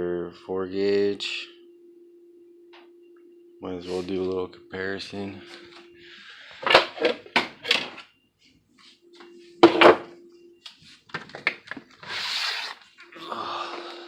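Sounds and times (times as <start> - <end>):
parts knocking and clattering: 6.6 - 8.0.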